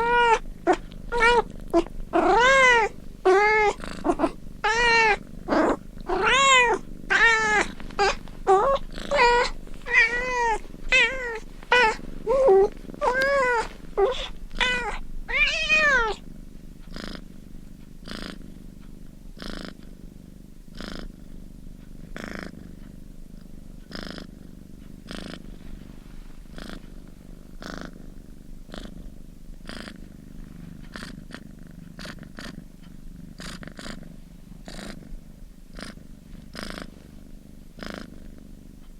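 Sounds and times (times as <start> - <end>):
kittens meowing: 0.0 - 16.2
cat purring: 0.0 - 38.9.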